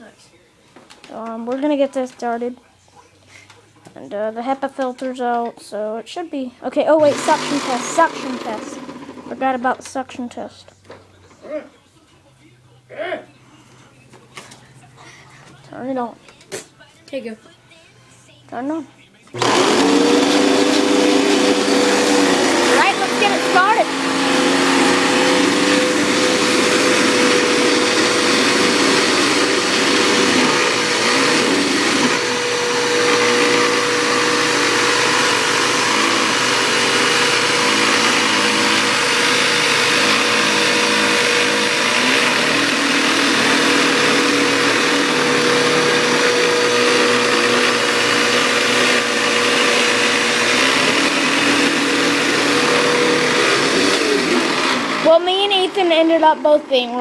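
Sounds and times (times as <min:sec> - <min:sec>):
vacuum cleaner running on carpet: 0:07.0 - 0:09.3, 0:19.4 - 0:56.5.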